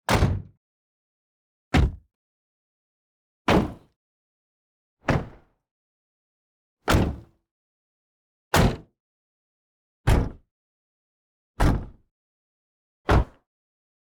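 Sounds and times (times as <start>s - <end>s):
car doors slamming shut: 1.8s - 2.0s, 3.5s - 3.8s.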